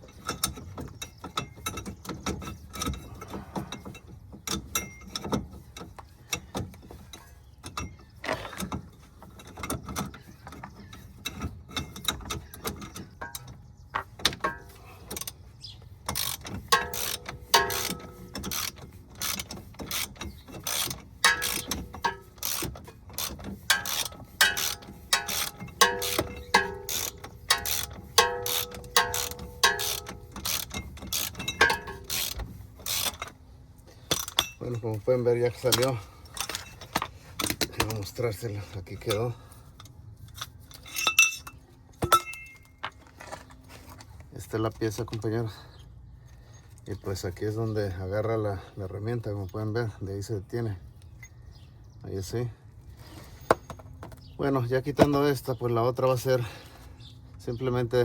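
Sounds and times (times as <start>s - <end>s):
hand ratchet clicking: 16.1s - 33.3s.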